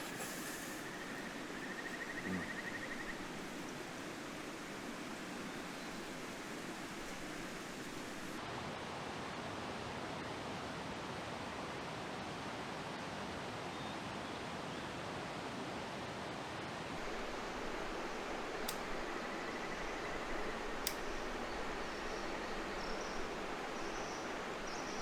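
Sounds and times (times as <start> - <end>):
stream water rushing: 0.0 - 8.4, 17.0 - 25.0.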